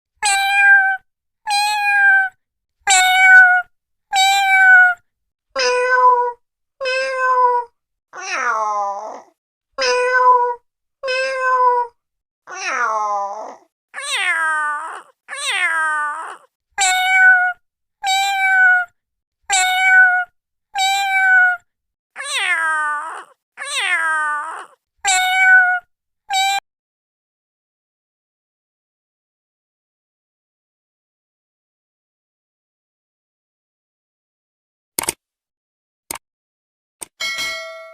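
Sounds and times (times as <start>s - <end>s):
cat meowing: 0.2s - 5.0s, 5.6s - 18.9s, 19.5s - 21.6s, 22.2s - 26.6s.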